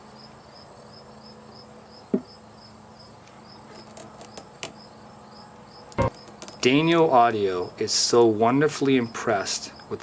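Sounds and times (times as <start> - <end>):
cricket chirping: 0.0 - 7.9
faint high whine and hum: 0.0 - 10.0.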